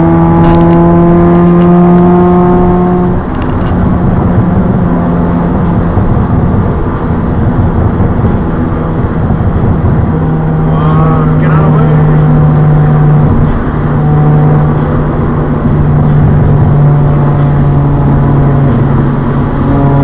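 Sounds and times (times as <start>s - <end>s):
car engine and exhaust droning: 0.0s - 20.0s
road rumble: 0.0s - 20.0s.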